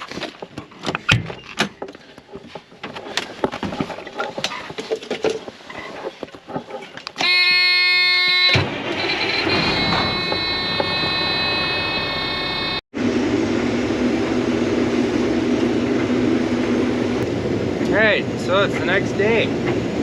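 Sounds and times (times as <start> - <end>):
footsteps crunching on rough ground: 0.0 - 7.2
loud steady overtone-rich tone: 7.2 - 12.8.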